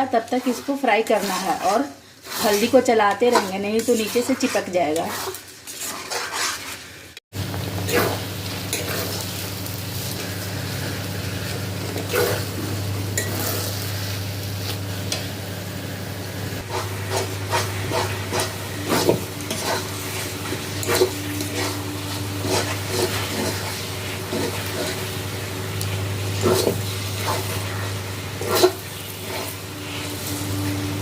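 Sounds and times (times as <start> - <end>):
spice sizzling in a pan: 0.0 - 31.0
steady low hum: 7.4 - 31.0
spoon scraping and knocking pan: 16.6 - 21.8.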